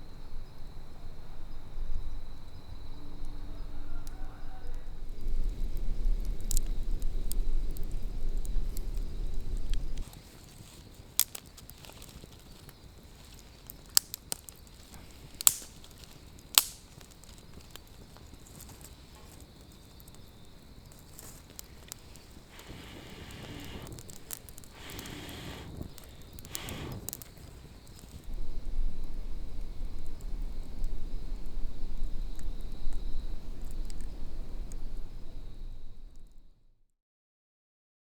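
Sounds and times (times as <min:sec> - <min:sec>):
campfire crackling: 0:00.1 - 0:36.6
fire hissing: 0:02.4 - 0:36.4
sharp pops: 0:13.8 - 0:17.8, 0:21.2 - 0:28.1.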